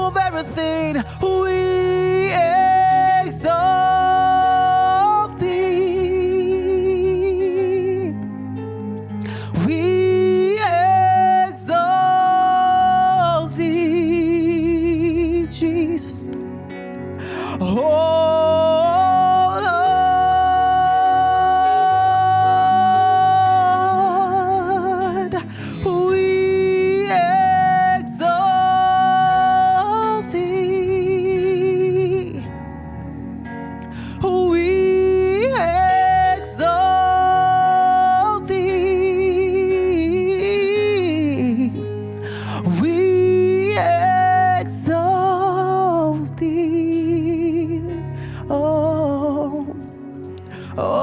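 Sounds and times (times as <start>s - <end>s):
person singing wordless notes: 0.0s - 51.0s
sustained instrumental chords: 0.0s - 51.0s
singer holding a long note: 17.4s - 32.5s.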